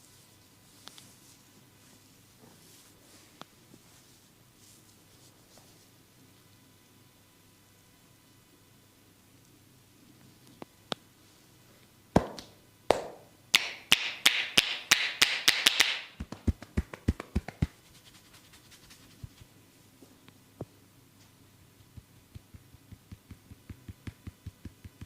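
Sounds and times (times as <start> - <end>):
hands slapping body: 12.2 - 17.8, 22.0 - 25.0
dull pats on body: 12.2 - 19.6, 21.8 - 25.0
hands rubbing skin: 16.2 - 19.6, 21.8 - 25.0.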